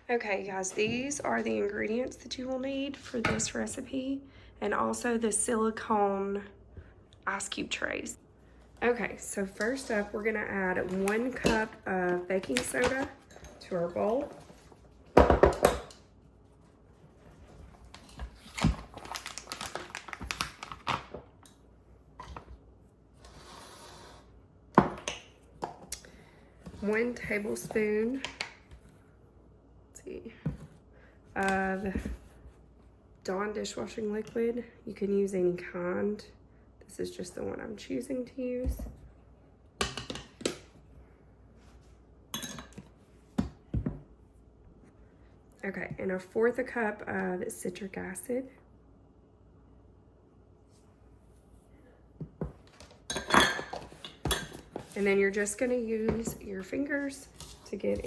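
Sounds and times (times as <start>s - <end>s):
packaging crinkling and rustling: 17.8s - 21.2s
kitchen containers clinking: 53.0s - 55.0s.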